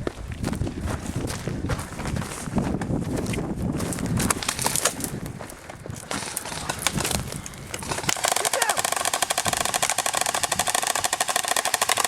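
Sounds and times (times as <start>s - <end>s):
airsoft gun firing: 7.8s - 12.0s.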